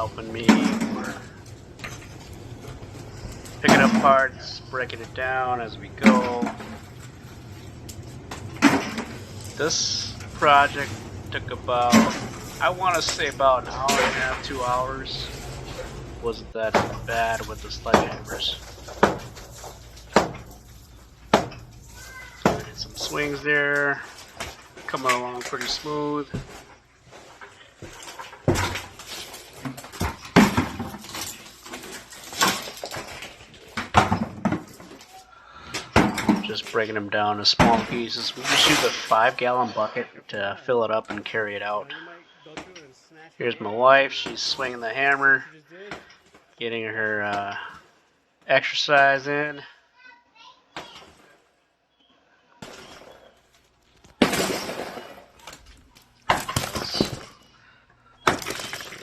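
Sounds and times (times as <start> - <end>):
broken concrete clattering: 0.0 - 37.0, 52.6 - 57.5, 58.2 - 59.0
sledgehammer smashing concrete: 3.6 - 4.3, 54.1 - 55.5, 56.3 - 57.3, 58.2 - 59.0.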